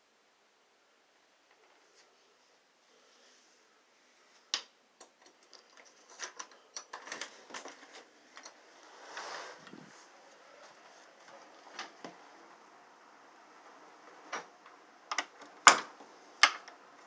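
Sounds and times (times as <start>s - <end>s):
faint hiss: 0.0s - 17.0s
things rattling in gusty wind: 7.0s - 17.0s
gust of wind: 9.1s - 10.0s.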